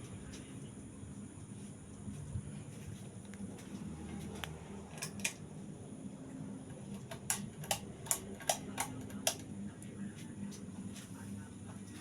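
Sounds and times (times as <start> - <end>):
ceiling fan motor hum: 0.0 - 12.0
sharp irregular clicks: 7.0 - 9.4.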